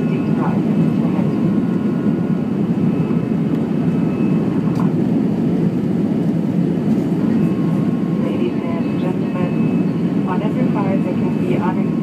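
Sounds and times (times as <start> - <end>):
airliner cabin rumble: 0.0 - 12.0.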